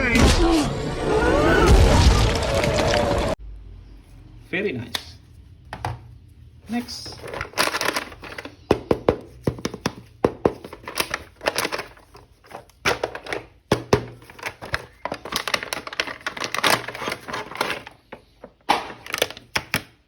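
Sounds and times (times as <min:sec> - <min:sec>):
packaging crinkling: 0:06.7 - 0:09.0, 0:09.6 - 0:20.0.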